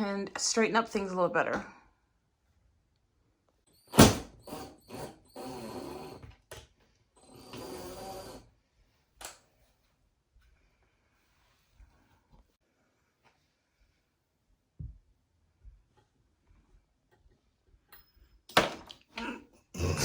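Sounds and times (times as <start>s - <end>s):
cordless drill running: 3.9s - 6.3s, 7.2s - 8.4s.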